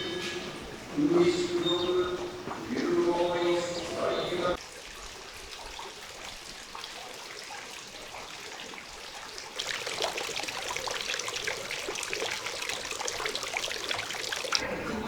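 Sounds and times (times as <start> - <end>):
water running and splashing: 4.6 - 14.7.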